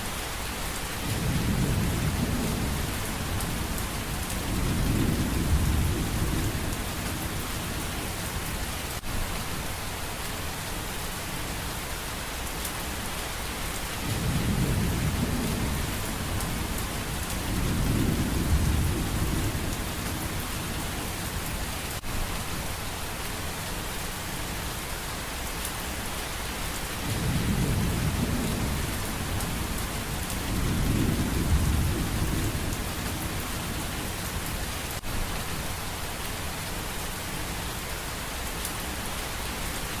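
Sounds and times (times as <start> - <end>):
rain hiss: 0.0 - 40.0
thunder rumbles: 14.0 - 21.2, 27.0 - 34.7.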